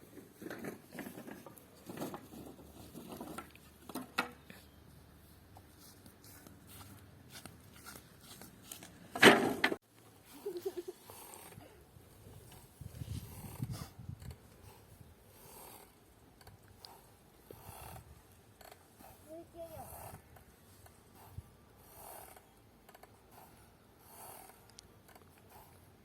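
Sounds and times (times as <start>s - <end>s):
wood clattering: 9.2s - 9.8s
wooden boards knocking and scraping: 9.2s - 9.8s.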